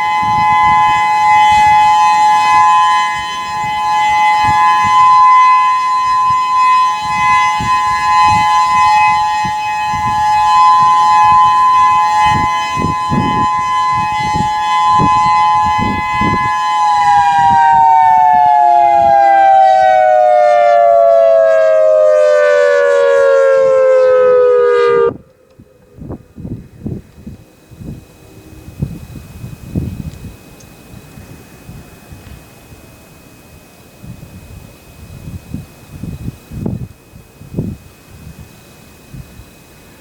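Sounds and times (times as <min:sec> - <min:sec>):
wind on microphone: 0:00.0 - 0:20.4, 0:24.9 - 0:40.0
warning siren: 0:00.0 - 0:40.0.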